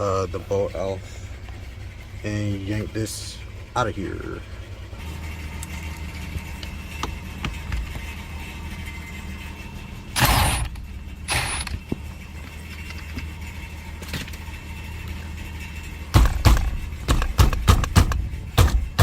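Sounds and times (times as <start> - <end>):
parts knocking and rattling: 4.9 - 19.0.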